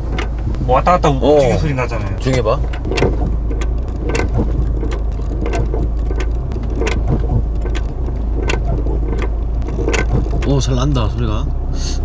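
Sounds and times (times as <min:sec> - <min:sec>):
road and engine rumble: 0:00.0 - 0:12.0
loose object knocking and clattering: 0:02.2 - 0:10.7.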